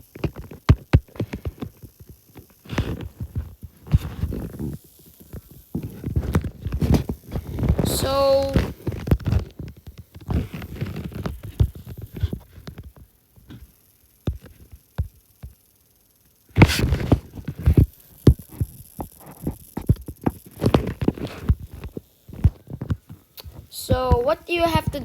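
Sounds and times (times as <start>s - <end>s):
microphone handling thumps: 16.6s - 25.0s.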